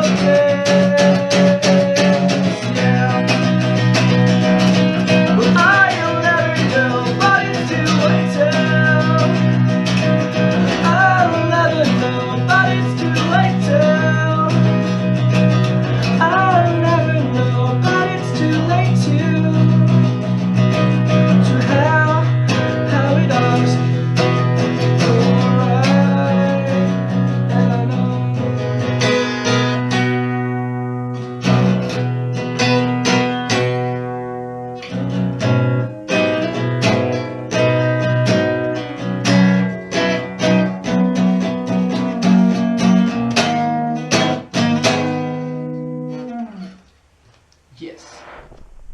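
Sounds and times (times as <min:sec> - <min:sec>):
person singing a melody: 0:00.0 - 0:03.6, 0:05.4 - 0:09.6, 0:10.7 - 0:14.8, 0:16.1 - 0:20.2, 0:25.0 - 0:28.8
strummed acoustic guitar: 0:00.0 - 0:46.9.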